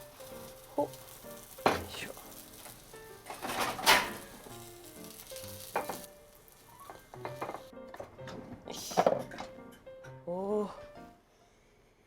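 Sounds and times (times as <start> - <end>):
food sizzling in a pan: 0.0 - 7.7.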